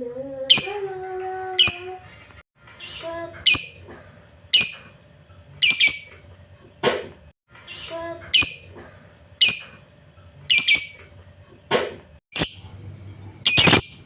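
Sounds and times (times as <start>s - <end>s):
bird shrill calls: 5.6s - 6.2s, 10.5s - 11.0s, 13.5s - 14.0s.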